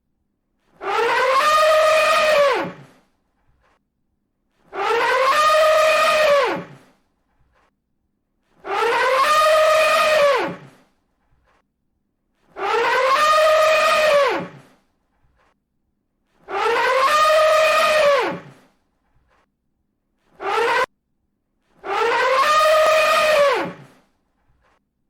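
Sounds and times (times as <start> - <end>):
elephant trumpeting: 0.8 - 3.0, 4.7 - 6.9, 8.6 - 10.8, 12.5 - 14.8, 16.4 - 18.7, 20.3 - 20.9, 21.8 - 24.0.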